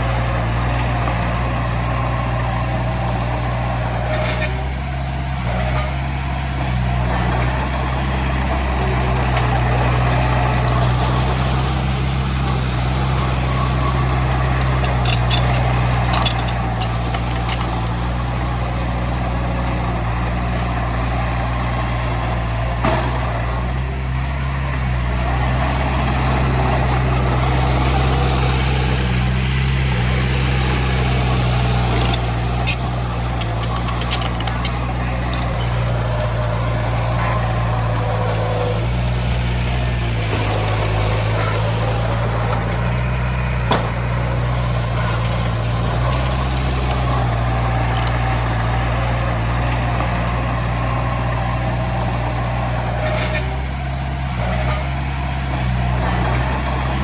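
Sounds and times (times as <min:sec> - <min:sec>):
heavy diesel engine running: 0:00.0 - 0:57.0
metallic clanks and knocks: 0:07.3 - 0:18.4, 0:26.3 - 0:51.5.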